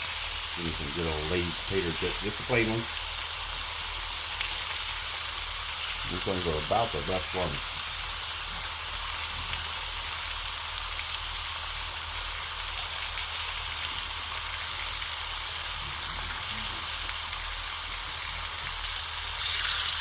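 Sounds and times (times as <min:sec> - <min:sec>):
meat sizzling on a griddle: 0:00.0 - 0:20.0.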